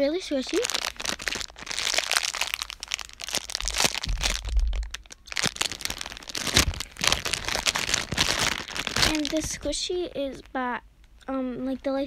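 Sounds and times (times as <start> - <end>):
toy packaging crinkling: 0.0 - 9.8.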